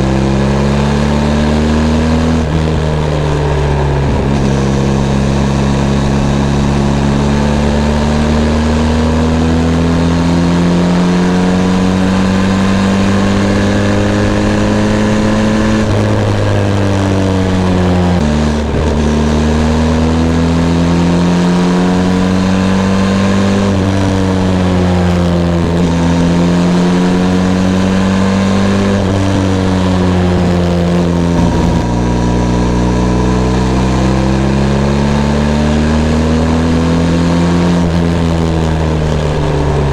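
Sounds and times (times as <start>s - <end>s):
motorcycle engine running: 29.0s - 32.8s.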